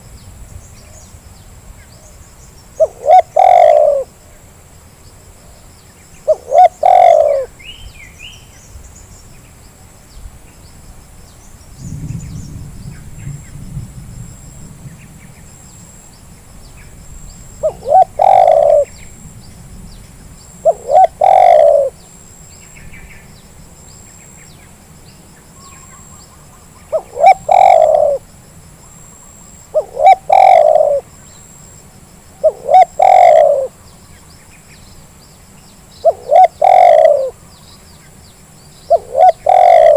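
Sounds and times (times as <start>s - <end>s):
dove cooing: 2.8s - 4.2s, 6.2s - 7.6s, 17.6s - 19.0s, 20.6s - 22.0s, 26.9s - 28.3s, 29.7s - 31.1s, 32.4s - 33.8s, 36.0s - 37.4s, 38.9s - 39.9s
faint small bird chirps: 20.7s - 28.2s.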